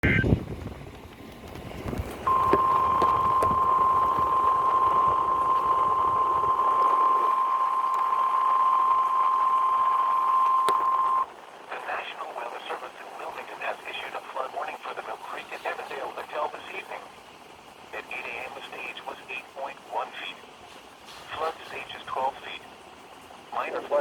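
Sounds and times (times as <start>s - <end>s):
radio hiss: 2.2s - 17.2s, 17.9s - 22.8s, 23.5s - 24.0s
steady high alarm tone: 2.3s - 11.2s.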